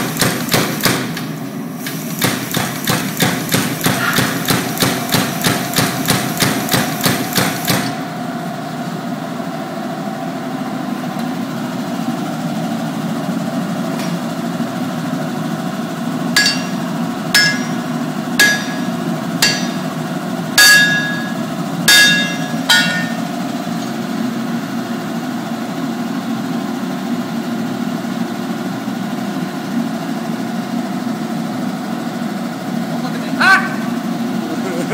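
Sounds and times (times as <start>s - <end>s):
power hammer pounding steel: 0.0s - 1.2s, 2.2s - 8.0s, 16.3s - 23.5s
steady hum: 16.2s - 23.9s
ringing hammer blows on metal: 16.4s - 20.0s, 20.6s - 23.4s.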